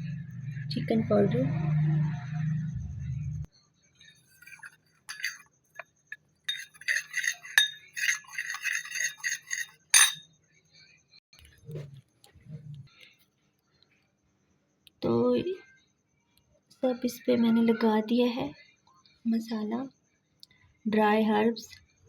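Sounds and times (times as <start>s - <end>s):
kitchenware clinking: 4.2s - 5.4s, 6.5s - 10.2s.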